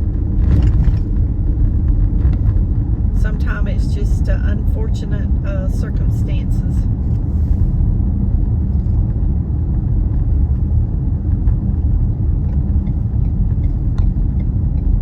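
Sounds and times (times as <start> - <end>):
road and engine rumble: 0.0 - 15.0.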